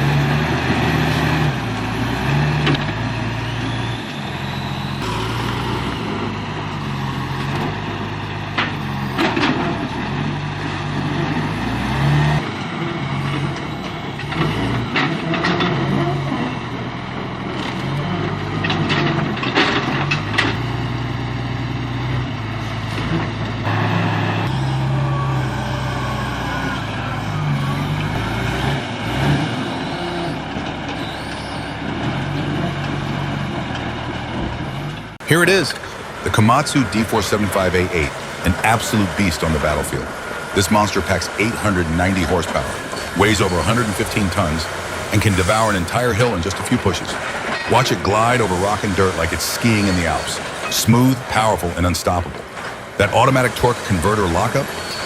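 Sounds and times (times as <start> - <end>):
heavy diesel engine running: 0.0 - 55.0
metal clanks and knocks: 7.4 - 10.2, 12.4 - 20.7, 46.2 - 48.6, 52.2 - 53.0.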